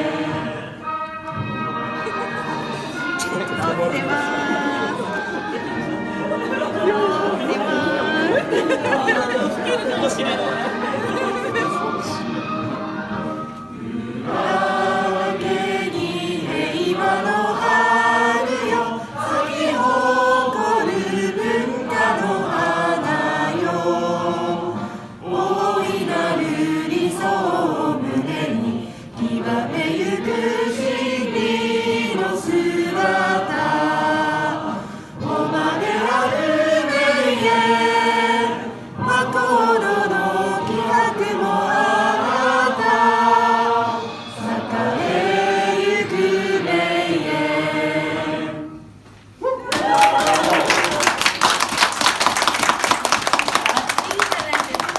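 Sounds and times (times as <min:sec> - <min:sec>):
group singing in unison: 0:00.0 - 0:49.0.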